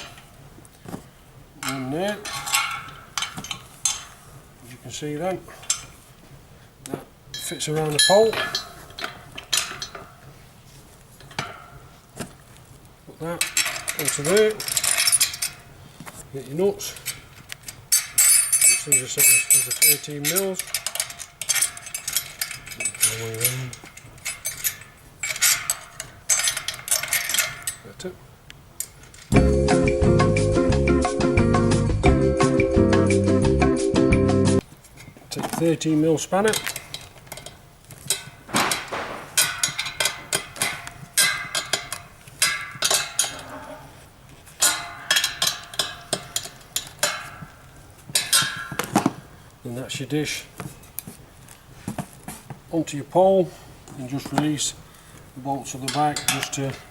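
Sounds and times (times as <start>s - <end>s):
spanner clinking against metal nuts: 1.6s - 4.2s, 7.3s - 10.2s, 13.4s - 15.6s, 16.9s - 27.9s, 36.4s - 43.5s, 44.6s - 49.1s, 55.7s - 56.9s
small metal parts clinking: 13.4s - 15.7s, 16.9s - 27.9s.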